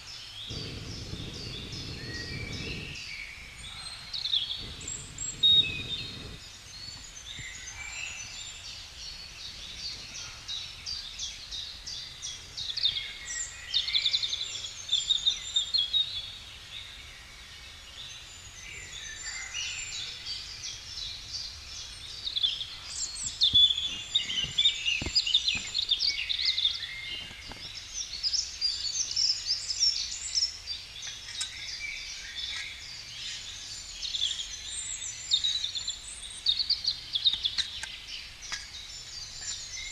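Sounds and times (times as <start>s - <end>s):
songbirds chirping and trilling: 0.0s - 39.9s
faint clicks: 31.0s - 31.6s.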